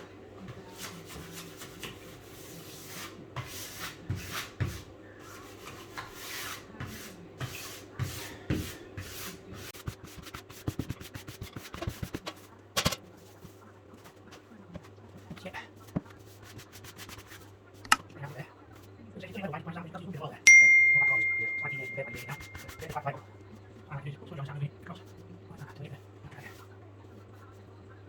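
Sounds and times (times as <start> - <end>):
sponge wiping wallpaper: 0.6 - 19.5, 21.6 - 23.0.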